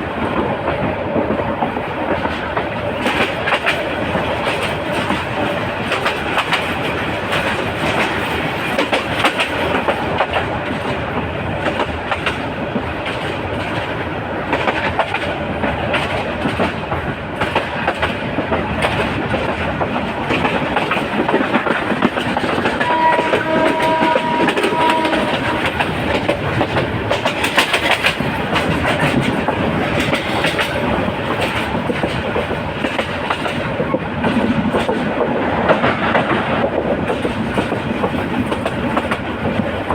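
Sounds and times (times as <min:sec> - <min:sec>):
train wheels clickety-clack: 0:00.0 - 0:39.9
train horn blasts: 0:22.8 - 0:26.0.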